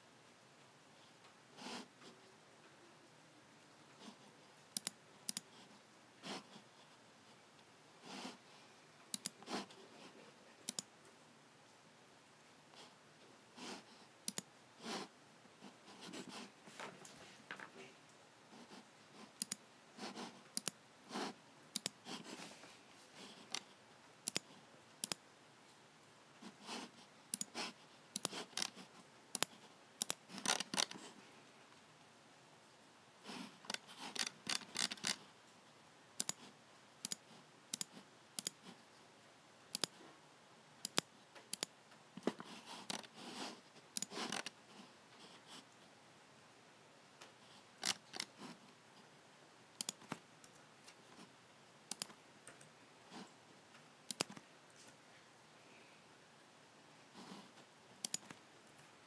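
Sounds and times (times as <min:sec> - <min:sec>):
computer mouse buttons clicking: 0:04.7 - 0:05.5, 0:09.1 - 0:09.5, 0:10.6 - 0:10.9, 0:14.2 - 0:14.5, 0:19.4 - 0:19.6, 0:20.5 - 0:20.8, 0:21.7 - 0:22.0, 0:23.4 - 0:25.2, 0:27.3 - 0:31.0, 0:33.7 - 0:35.2, 0:36.2 - 0:38.7, 0:39.7 - 0:40.0, 0:40.8 - 0:43.1, 0:43.9 - 0:44.6, 0:47.8 - 0:48.4, 0:49.8 - 0:50.6, 0:51.9 - 0:52.7, 0:54.1 - 0:54.4, 0:58.0 - 0:58.4.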